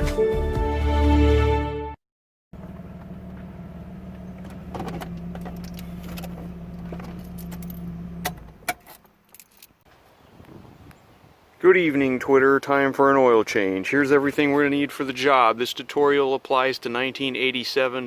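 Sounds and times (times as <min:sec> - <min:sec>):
car engine idling: 0:02.6 - 0:08.7
keys jingling: 0:05.5 - 0:08.1, 0:08.8 - 0:09.8.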